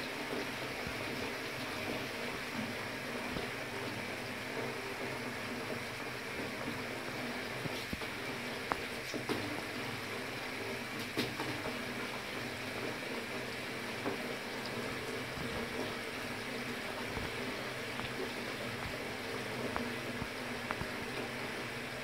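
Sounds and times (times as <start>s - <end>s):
water running from a tap: 0.0s - 22.0s.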